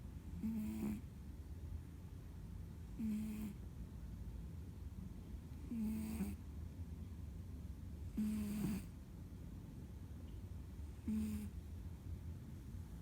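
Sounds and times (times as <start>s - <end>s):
cat snoring: 0.3s - 1.1s, 2.9s - 3.6s, 5.6s - 6.4s, 8.1s - 9.0s, 10.9s - 11.6s.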